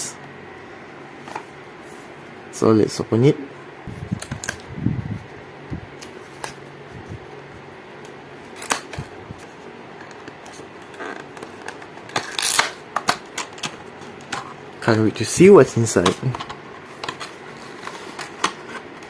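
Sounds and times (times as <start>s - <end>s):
cardboard packaging clicks and taps: 10.0s - 14.5s.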